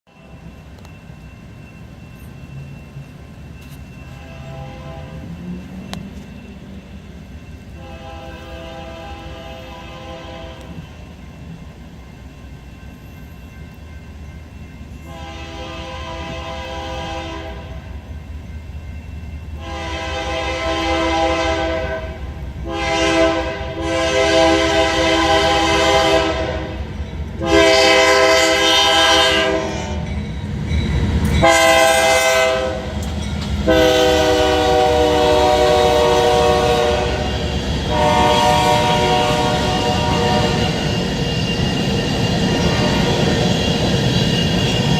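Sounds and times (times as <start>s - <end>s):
train rumble: 0.1s - 44.9s
locomotive air horn blasts: 4.1s - 5.3s, 7.8s - 10.8s, 15.1s - 17.9s, 19.6s - 26.8s, 27.4s - 30.1s, 31.4s - 33.0s, 33.6s - 40.9s, 42.6s - 43.2s.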